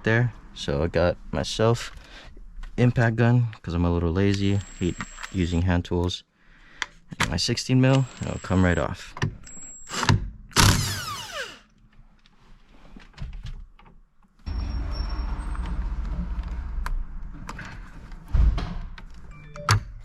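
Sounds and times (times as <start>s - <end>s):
thud: 16.7s - 19.0s.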